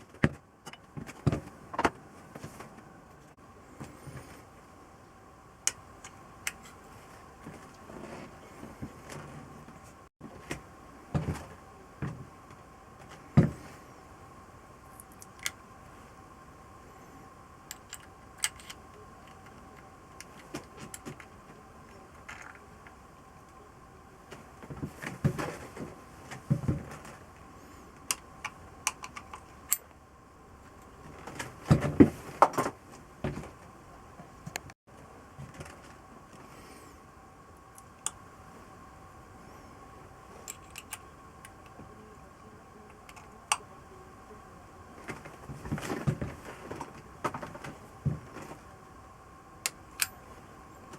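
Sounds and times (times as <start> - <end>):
faint steady hum: 0.0 - 50.9.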